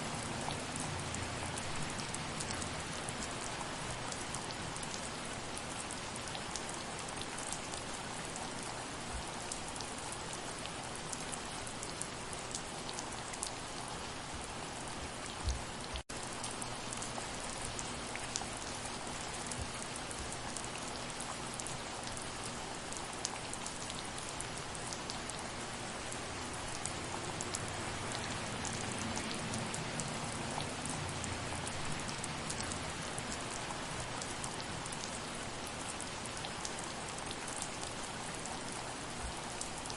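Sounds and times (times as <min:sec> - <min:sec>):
soft rain: 0:00.0 - 0:39.9
raindrops ticking: 0:26.0 - 0:39.9.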